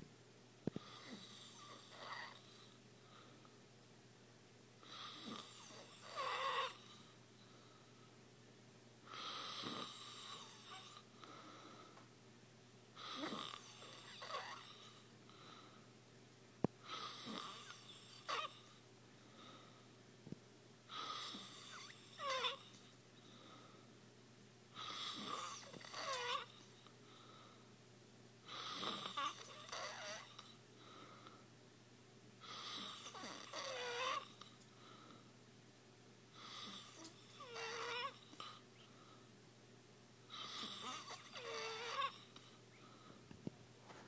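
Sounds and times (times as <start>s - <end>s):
snoring with wheezy whistle: 0.8s - 2.8s, 4.8s - 7.1s, 9.1s - 11.1s, 13.0s - 15.1s, 16.9s - 18.8s, 20.9s - 22.8s, 24.8s - 26.7s, 28.5s - 30.6s, 32.4s - 34.5s, 36.4s - 38.6s, 40.3s - 42.9s.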